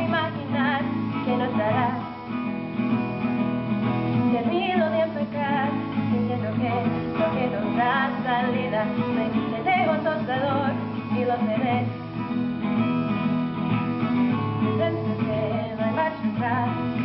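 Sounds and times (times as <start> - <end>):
person singing: 0.0 - 2.2, 4.3 - 12.0, 14.6 - 17.0
acoustic guitar strumming: 0.0 - 17.0.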